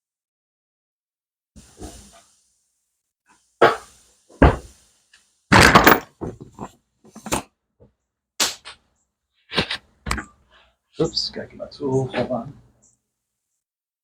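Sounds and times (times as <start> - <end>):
tools rattling on workbench: 5.5 - 7.4.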